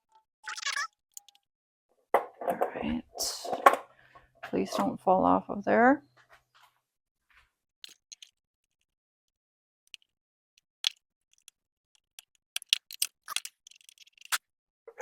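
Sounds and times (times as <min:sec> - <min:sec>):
small clicks and taps of parts: 0:10.8 - 0:14.4.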